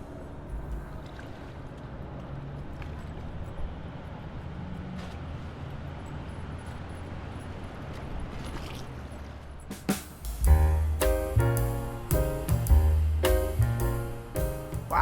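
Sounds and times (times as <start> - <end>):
even hiss: 10.1 - 15.0
low steady rumble: 10.3 - 15.0.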